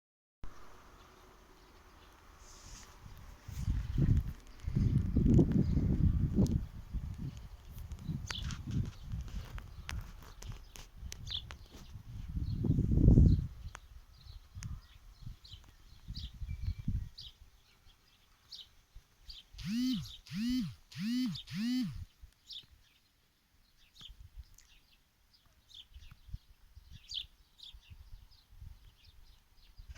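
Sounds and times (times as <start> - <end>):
small birds chirping: 0.8 - 29.9
loud rising and falling bird calls: 19.3 - 22.1.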